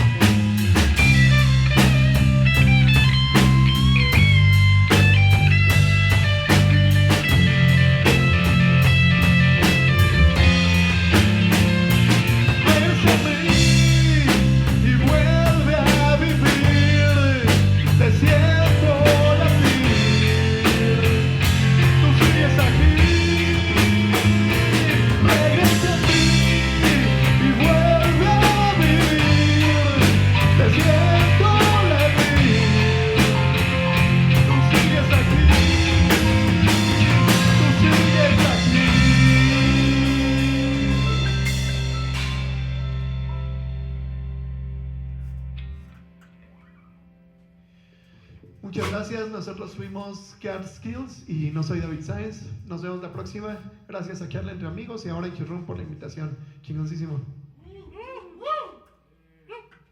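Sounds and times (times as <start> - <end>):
drum kit beat: 0.0 - 43.5, 48.7 - 49.2
lead guitar bending notes: 0.0 - 47.9
bass guitar: 0.0 - 50.0.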